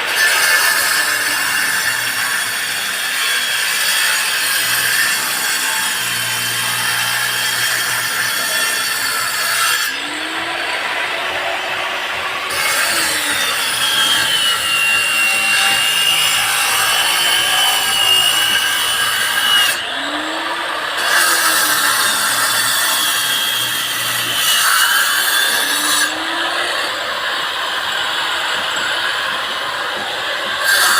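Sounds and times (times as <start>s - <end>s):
angle grinder whining: 0.0s - 30.9s.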